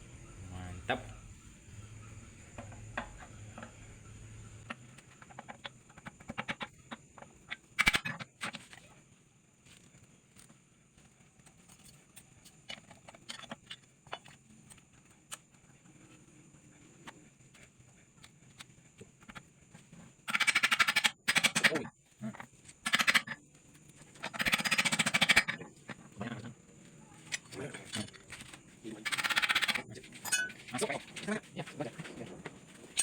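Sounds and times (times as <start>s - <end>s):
metal tools clicking and knocking: 4.6s - 8.7s, 20.2s - 23.4s, 24.0s - 25.9s, 27.2s - 31.2s.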